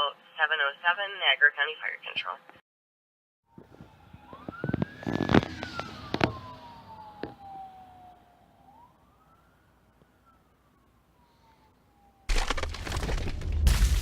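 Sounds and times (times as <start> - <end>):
electronic siren wailing: 3.5 - 9.6
sharp knocks and crackles: 12.3 - 14.0.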